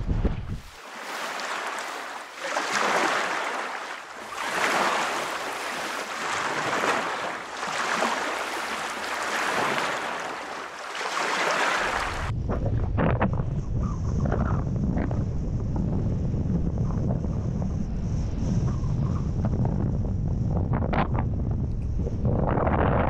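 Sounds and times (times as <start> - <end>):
sea water surging: 0.6 - 12.3.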